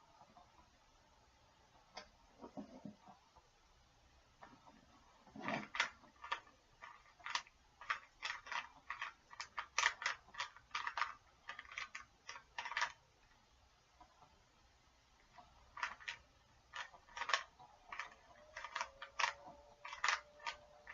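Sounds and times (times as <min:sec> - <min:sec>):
puzzle cube clicking as twisted: 0:05.6 - 0:13.0, 0:15.7 - 0:20.9.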